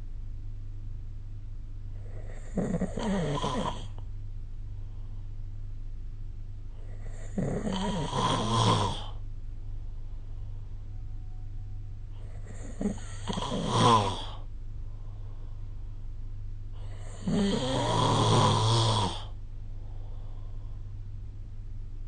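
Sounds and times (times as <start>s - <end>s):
steady low hum: 0.0s - 22.0s
person snoring: 2.0s - 4.0s, 6.8s - 9.2s, 12.2s - 14.5s, 16.8s - 19.4s.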